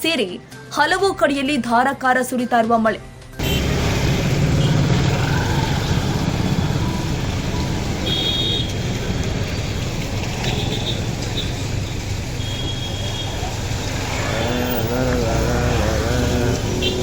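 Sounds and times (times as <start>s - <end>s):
heavy rain: 3.4s - 17.0s
road traffic: 3.4s - 17.0s.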